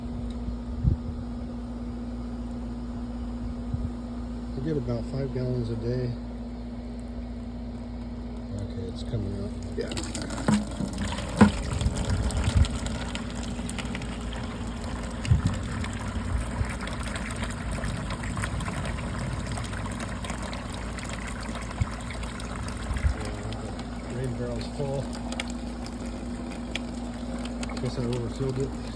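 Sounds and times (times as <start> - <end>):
water trickling and splashing: 9.1 - 28.9.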